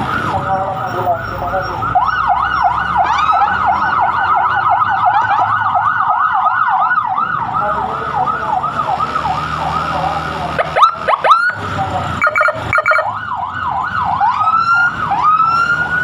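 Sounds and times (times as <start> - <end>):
emergency sirens yelping: 0.0 - 16.0
road noise: 0.0 - 16.0.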